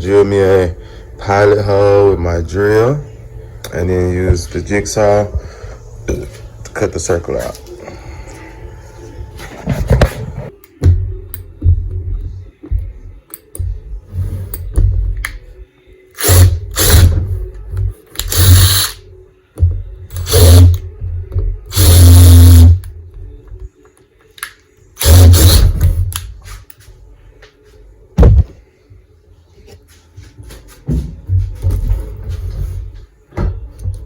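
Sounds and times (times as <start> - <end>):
power drill drilling into wood: 18.3 - 18.9, 20.2 - 20.7, 21.7 - 22.8, 25.0 - 25.7.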